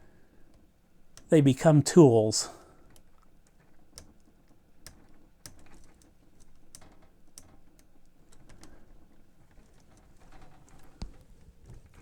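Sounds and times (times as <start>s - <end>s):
fingernails clicking on metal: 2.9s - 8.8s.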